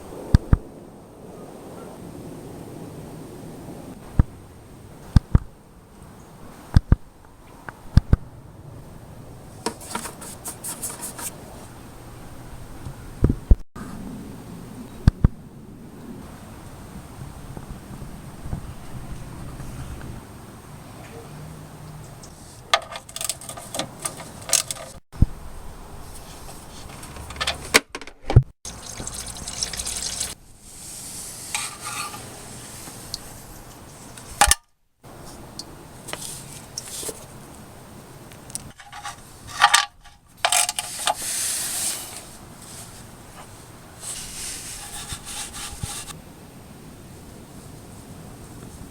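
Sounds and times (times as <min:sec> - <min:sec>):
tools clicking and knocking: 0:22.7 - 0:25.0
motor oil pouring: 0:28.7 - 0:30.4.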